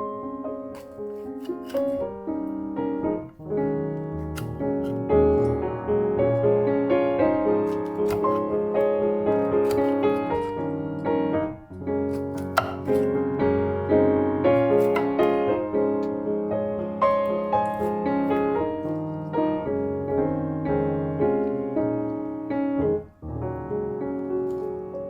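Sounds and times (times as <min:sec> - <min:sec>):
piano music: 0:00.0 - 0:25.0.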